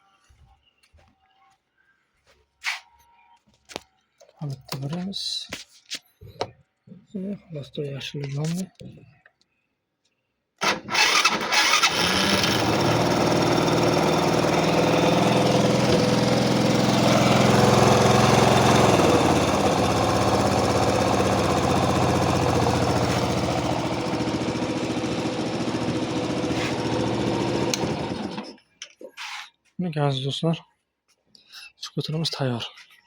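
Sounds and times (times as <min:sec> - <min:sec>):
scooter engine revving and idling: 0:10.6 - 0:28.6.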